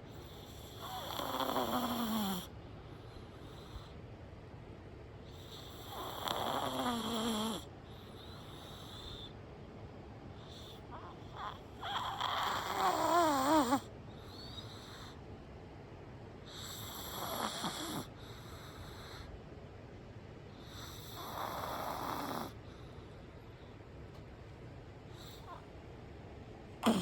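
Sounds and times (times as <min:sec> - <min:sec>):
loud snoring: 0:00.2 - 0:02.5, 0:05.4 - 0:07.7, 0:10.9 - 0:13.9, 0:16.5 - 0:18.1, 0:20.8 - 0:22.6.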